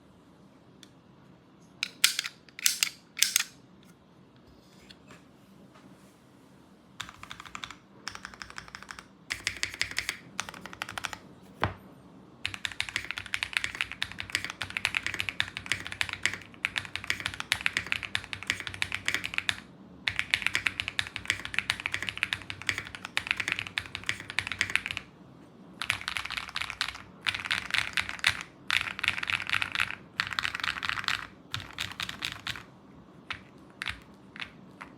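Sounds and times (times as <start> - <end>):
typing on mechanical keyboard: 7.0 - 11.3, 12.4 - 25.1, 25.8 - 32.7, 33.3 - 34.9.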